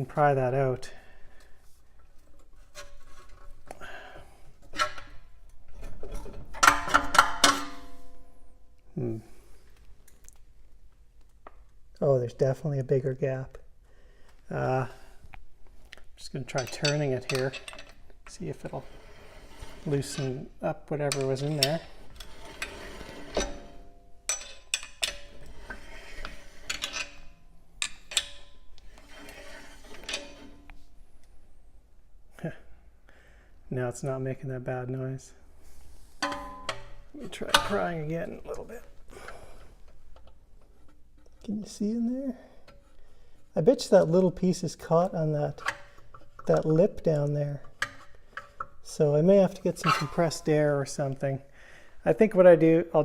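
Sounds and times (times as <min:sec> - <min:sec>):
screwdriver scraping metal: 0:16.5 - 0:30.7.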